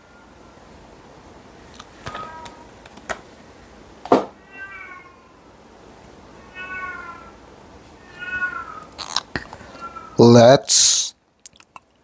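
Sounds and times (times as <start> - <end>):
cat meowing: 2.1 - 2.7, 4.4 - 5.4, 6.4 - 7.4, 8.0 - 9.2, 9.8 - 10.2.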